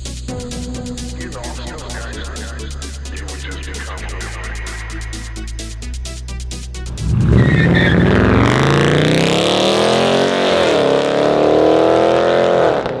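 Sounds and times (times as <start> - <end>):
electronic music beat: 0.0 - 12.3
car engine accelerating: 6.6 - 13.0.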